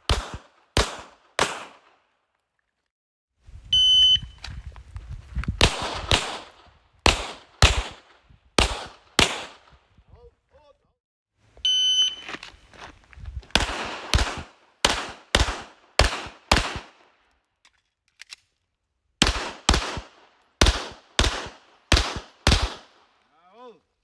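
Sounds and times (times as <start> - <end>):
pistol shots: 0.0 - 1.9, 5.6 - 9.7, 13.5 - 17.0, 19.2 - 23.0
shot timer beep: 3.8 - 4.4, 11.6 - 12.3.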